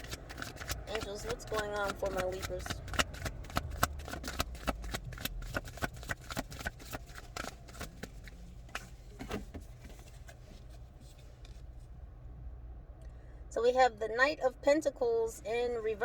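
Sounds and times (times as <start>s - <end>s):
cards being shuffled: 0.0s - 11.7s.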